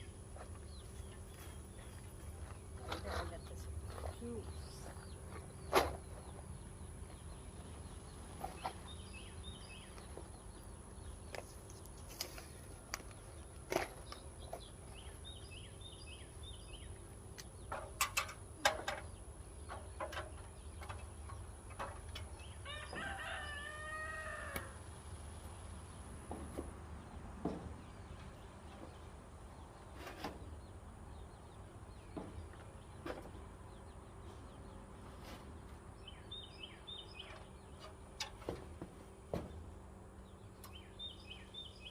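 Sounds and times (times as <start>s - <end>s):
rooster crowing: 22.6s - 24.8s.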